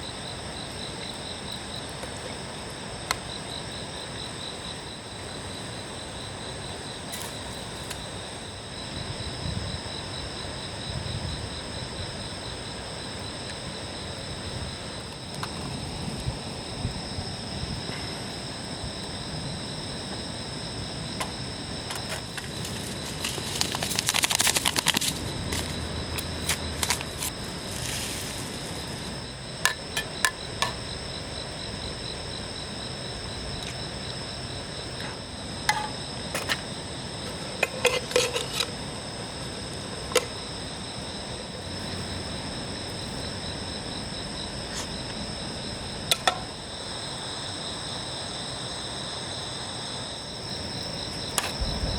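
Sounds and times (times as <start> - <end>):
insects singing: 0.0 - 51.9
rustling: 21.9 - 29.2.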